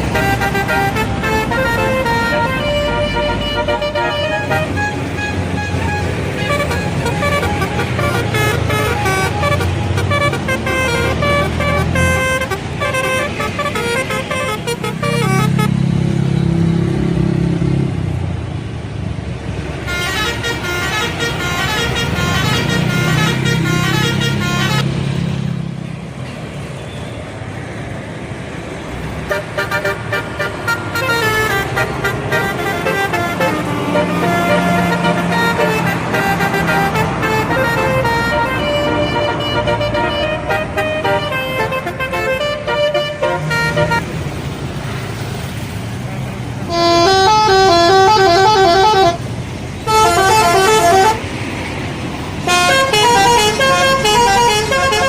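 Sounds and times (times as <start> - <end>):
bus horns playing stepped notes: 0.0 - 15.9, 19.8 - 25.0, 29.3 - 44.5, 46.6 - 51.4, 52.3 - 55.0
bus engine running: 0.0 - 55.0.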